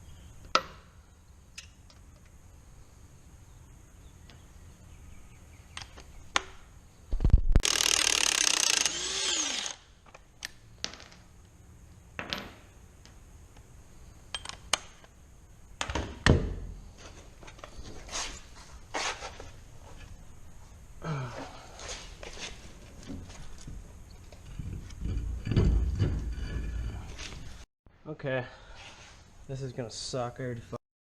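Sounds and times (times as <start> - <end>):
power tool whine: 7.6 - 9.9.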